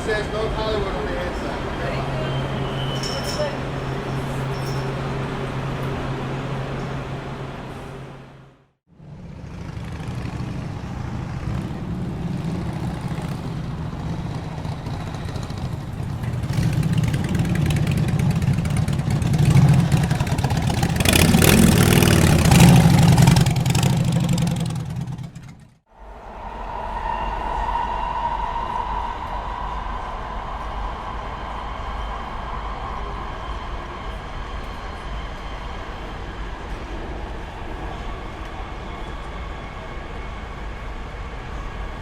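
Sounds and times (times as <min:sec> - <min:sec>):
vehicle engine rumble: 0:00.0 - 0:42.0
low hum: 0:10.6 - 0:39.0
steady whining tone: 0:25.9 - 0:42.0.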